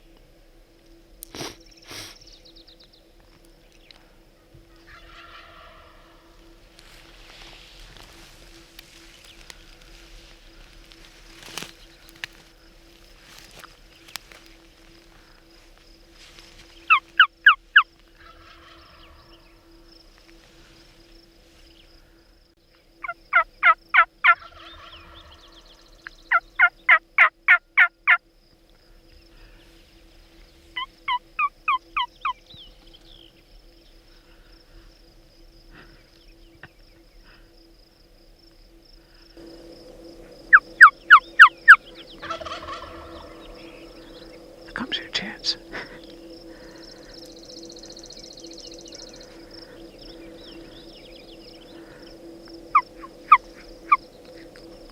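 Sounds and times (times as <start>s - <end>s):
turkey yelping: 4.9s - 6.2s, 30.8s - 32.1s, 40.5s - 43.4s.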